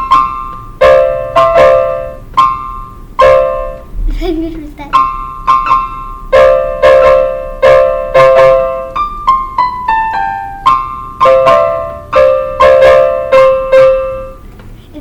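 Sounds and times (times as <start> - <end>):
electronic keyboard piano melody: 0.0 - 3.9, 4.8 - 14.5.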